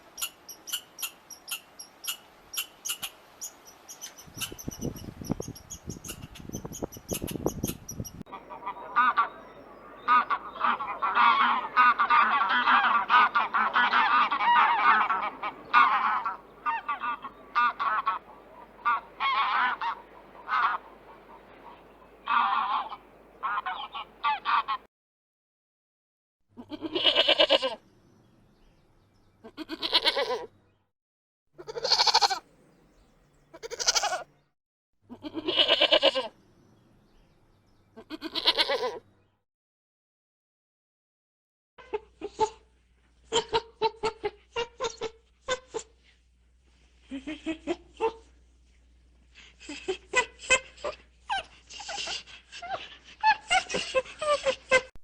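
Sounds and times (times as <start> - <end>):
single goose calling: 6.0 - 24.9, 31.6 - 32.5, 33.5 - 34.3
flock of geese honking: 8.3 - 24.9.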